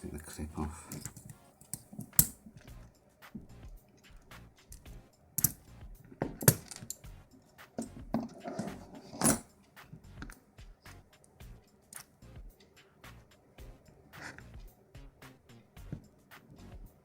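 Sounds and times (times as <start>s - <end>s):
metal lock clicks and scrapes: 0.9s - 2.7s, 4.7s - 7.1s, 7.8s - 9.6s, 11.9s - 12.2s, 14.2s - 14.5s.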